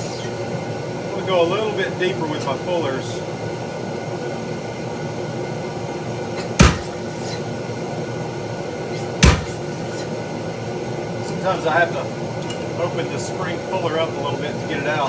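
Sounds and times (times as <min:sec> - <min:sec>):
steady background hum: 0:00.0 - 0:15.0
hammer striking hot steel: 0:06.4 - 0:07.4, 0:09.0 - 0:10.0.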